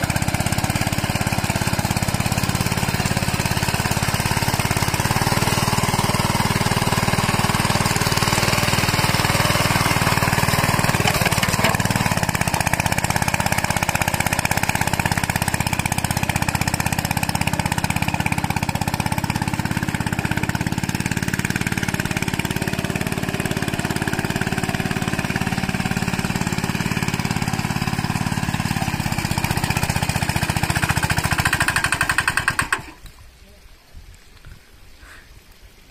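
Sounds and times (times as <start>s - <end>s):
diesel engine knocking: 0.0s - 33.0s.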